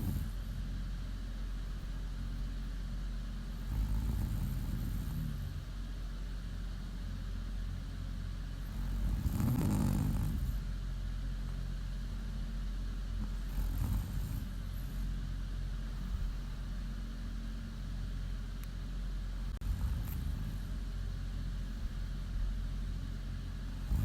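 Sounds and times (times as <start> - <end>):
woman snoring: 0.0 - 0.5, 3.5 - 5.8, 8.6 - 10.7, 13.4 - 15.0, 19.6 - 20.9, 23.8 - 24.0
steady low hum: 0.0 - 24.0.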